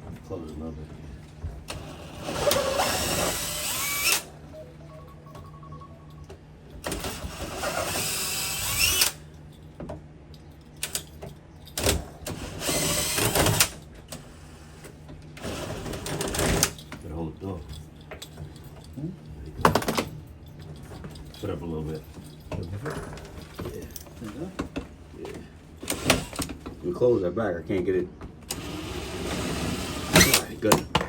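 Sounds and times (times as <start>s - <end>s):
power drill running: 1.7s - 4.3s, 6.8s - 9.2s, 12.3s - 13.7s, 25.8s - 26.5s, 28.5s - 30.6s.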